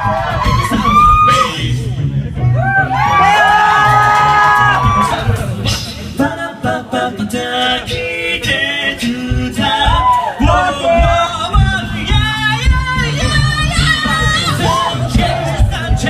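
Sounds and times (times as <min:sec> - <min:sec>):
band with bass and drums: 0:00.0 - 0:16.0
man singing: 0:00.4 - 0:02.0, 0:04.9 - 0:16.0.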